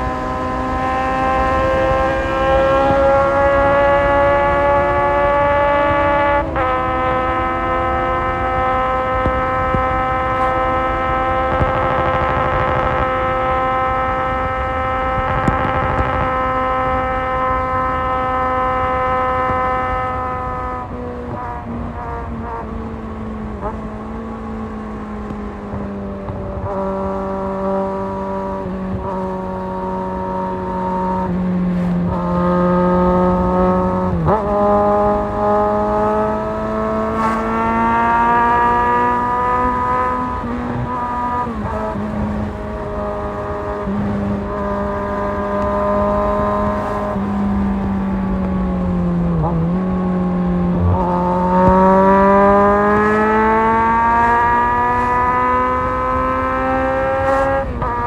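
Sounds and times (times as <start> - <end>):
motorcycle engine running: 0.0 - 57.8.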